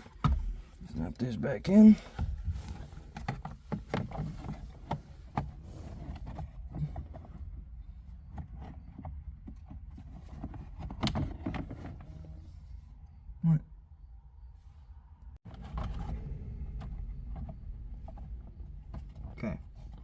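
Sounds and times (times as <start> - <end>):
low steady hum: 11.6 - 20.0.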